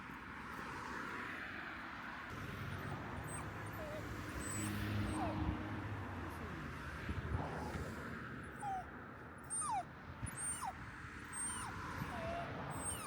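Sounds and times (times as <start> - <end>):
dog whimpering: 3.2 - 5.4, 8.5 - 13.0.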